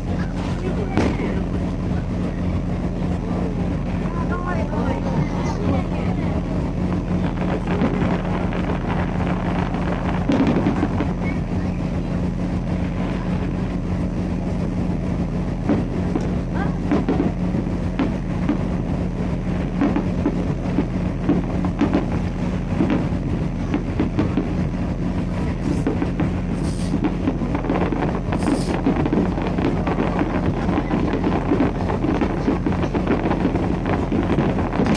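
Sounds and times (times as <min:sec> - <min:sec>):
fireworks bangs and crackles: 0:00.0 - 0:34.9
low hum: 0:00.0 - 0:34.9
wind on microphone: 0:00.0 - 0:34.9.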